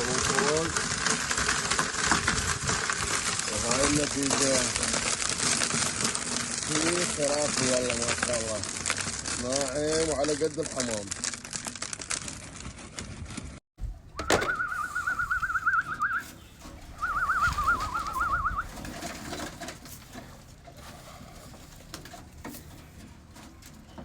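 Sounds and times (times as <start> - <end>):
bird warbling trill: 14.2 - 18.8.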